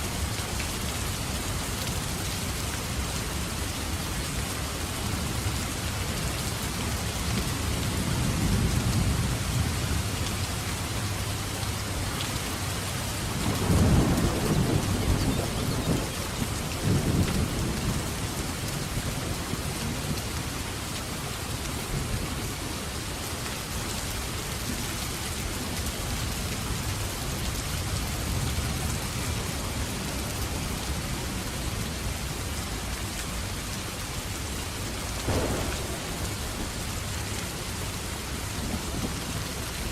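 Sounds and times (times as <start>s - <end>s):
heavy rain: 0.0s - 39.9s
low thunder rumbling: 13.3s - 20.2s, 35.2s - 39.8s.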